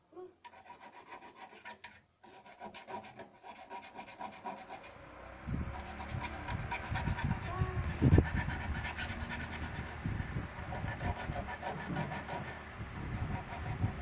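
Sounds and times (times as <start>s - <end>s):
low rumble: 5.4s - 14.0s.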